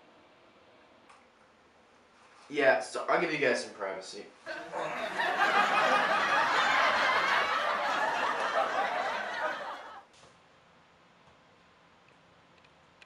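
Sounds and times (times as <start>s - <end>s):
people laughing and giggling: 4.5s - 10.0s.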